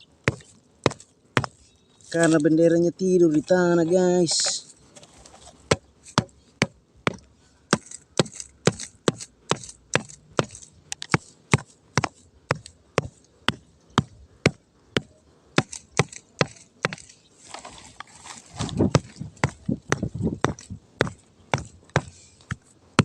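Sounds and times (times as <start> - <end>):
sharp wooden knocks: 18.9 - 22.2.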